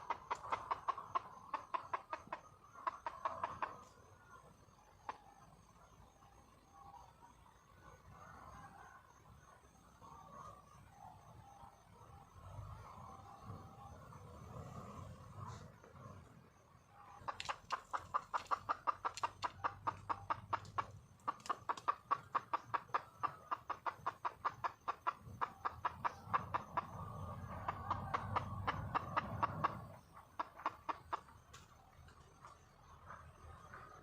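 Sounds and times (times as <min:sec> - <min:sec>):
hen clucking: 0:00.0 - 0:04.1, 0:17.1 - 0:31.9.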